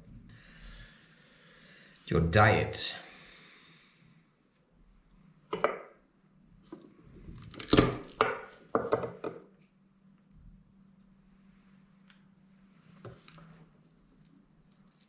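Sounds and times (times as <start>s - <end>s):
kitchenware knocking and clattering: 8.2s - 9.4s.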